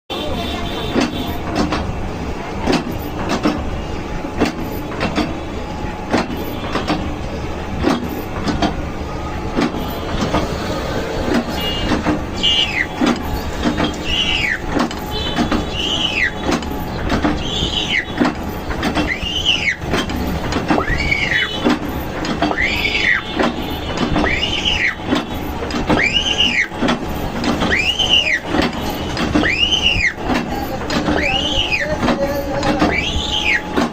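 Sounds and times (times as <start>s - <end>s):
woodworking machine rumbling: 0.1s - 33.9s
squeal rising and falling in pitch: 14.0s - 14.6s, 19.1s - 19.8s, 24.3s - 25.0s, 32.9s - 33.6s.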